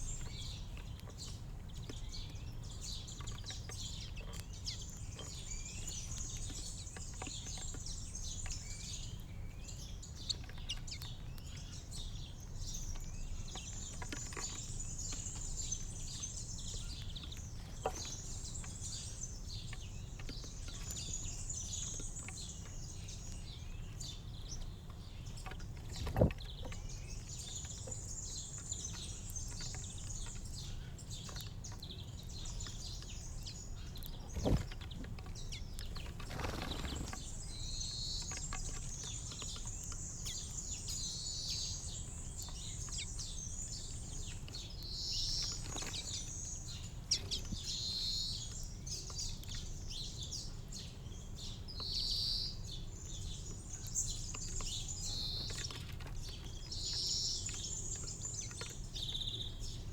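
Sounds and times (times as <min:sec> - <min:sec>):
small birds chirping: 0:00.0 - 0:59.9.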